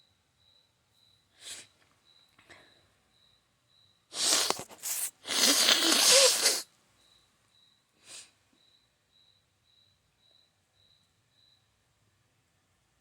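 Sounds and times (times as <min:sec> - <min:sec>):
person sniffing: 0:01.4 - 0:01.8, 0:04.1 - 0:06.7, 0:08.0 - 0:08.4
person blowing nose: 0:04.1 - 0:06.7.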